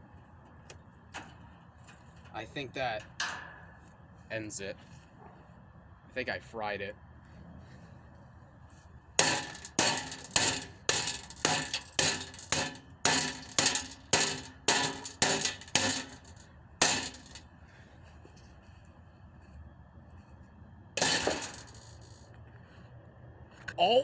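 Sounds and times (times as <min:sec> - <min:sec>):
clanging blows on metal fan: 0:01.1 - 0:03.8, 0:09.2 - 0:17.4, 0:21.0 - 0:22.2.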